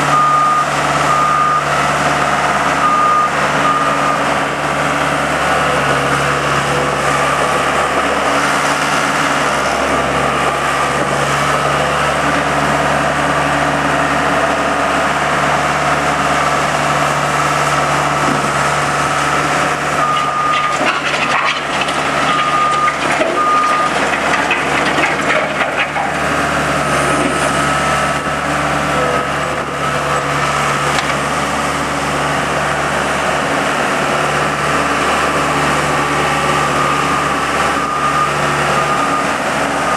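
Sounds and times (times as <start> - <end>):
diesel engine running: 0.0 - 39.9
backup alarm beeps: 2.8 - 4.2.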